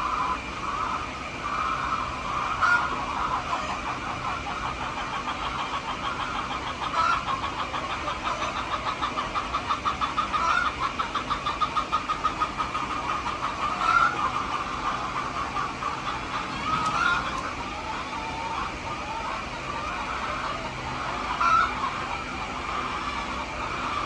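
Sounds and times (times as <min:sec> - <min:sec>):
chickens clucking: 0:00.0 - 0:24.0
short rising chicken call: 0:16.0 - 0:19.2.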